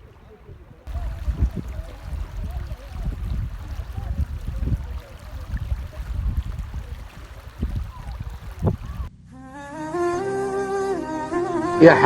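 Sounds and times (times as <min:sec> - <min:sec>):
flood water rushing: 0:00.9 - 0:09.1.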